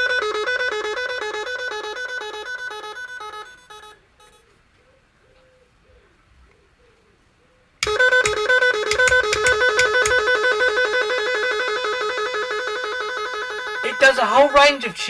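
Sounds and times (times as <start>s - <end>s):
musical car horn tune: 0.0s - 3.9s, 11.6s - 15.0s.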